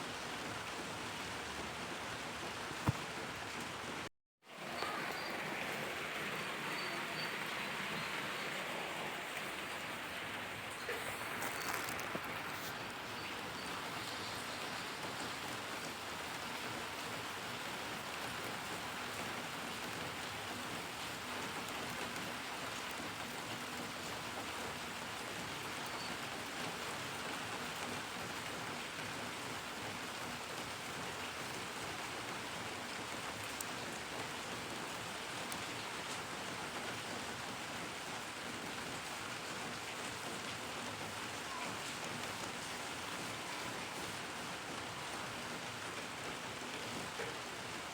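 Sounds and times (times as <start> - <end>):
rain pattering on surfaces: 0.0 - 47.9.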